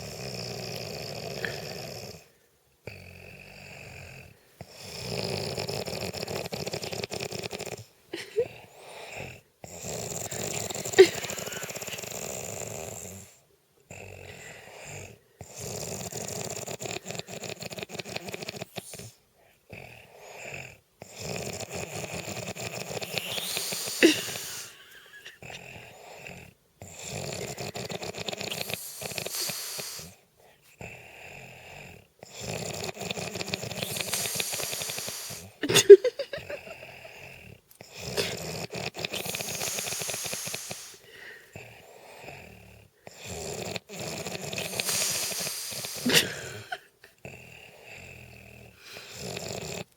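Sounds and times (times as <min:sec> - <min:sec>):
man snoring: 0:00.0 - 0:30.2, 0:30.8 - 0:49.9.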